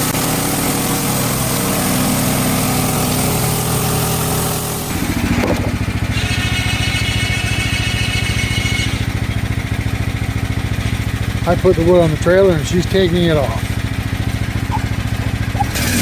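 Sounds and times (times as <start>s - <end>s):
gas engine running and idling: 0.0s - 16.0s.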